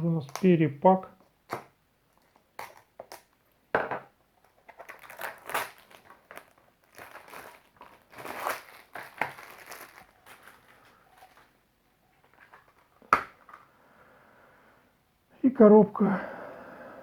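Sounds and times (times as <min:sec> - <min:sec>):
packaging crinkling: 0:01.5 - 0:03.5, 0:04.4 - 0:11.6.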